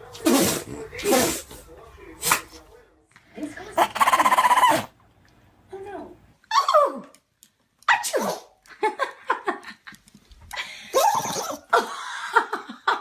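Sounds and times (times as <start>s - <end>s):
dog sneezing: 0.2s - 1.5s, 7.9s - 8.6s.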